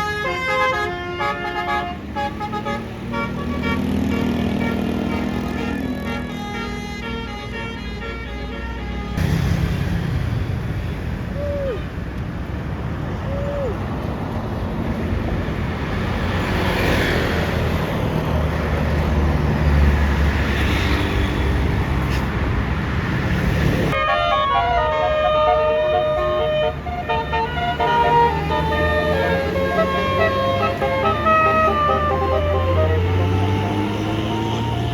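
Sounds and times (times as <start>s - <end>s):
multi-tone bus horn melody: 0.0s - 9.2s, 24.0s - 34.9s
bus engine rumbling: 0.0s - 34.9s
traffic noise: 0.0s - 34.9s.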